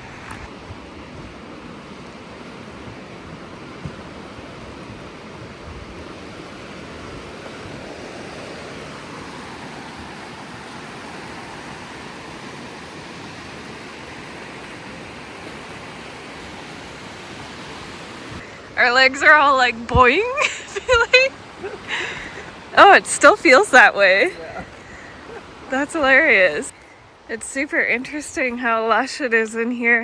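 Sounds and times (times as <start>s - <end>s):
mountain creek rushing: 0.0s - 30.0s.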